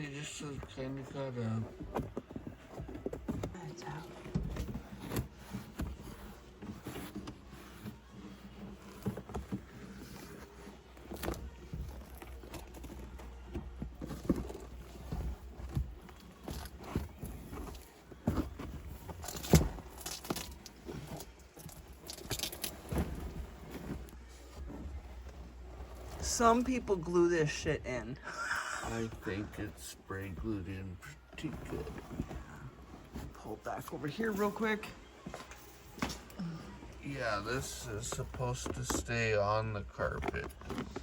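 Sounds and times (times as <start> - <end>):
hands handling car parts: 0.2 - 27.6, 37.3 - 41.0.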